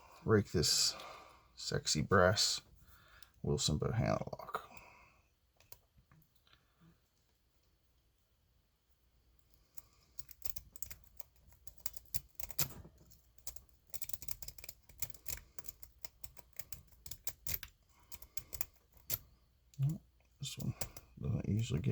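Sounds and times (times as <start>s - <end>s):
lock pick raking padlock: 9.8s - 19.3s
lock pins clicking: 9.8s - 19.3s.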